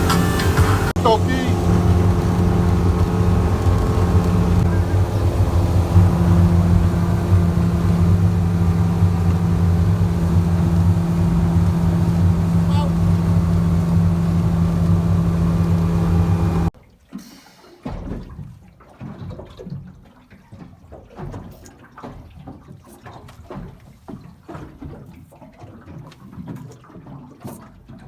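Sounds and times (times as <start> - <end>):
motorboat engine running: 0.0 - 16.7
water sloshing and lapping: 0.0 - 28.0.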